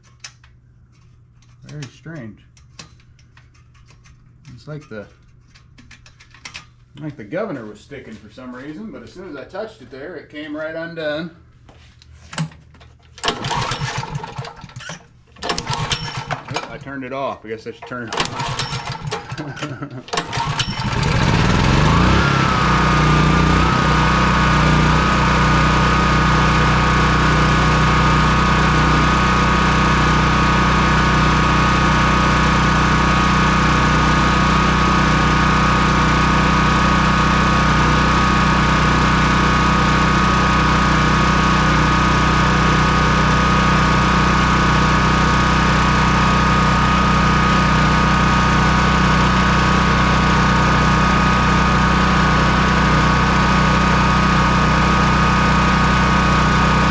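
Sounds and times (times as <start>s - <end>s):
generator engine running: 13.2s - 17.1s, 17.9s - 56.9s.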